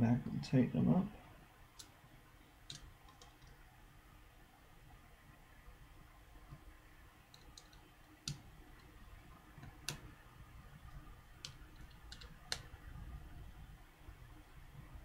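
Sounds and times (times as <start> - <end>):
screwdriver clicking on tiny screws: 7.3 - 8.9, 11.4 - 12.7.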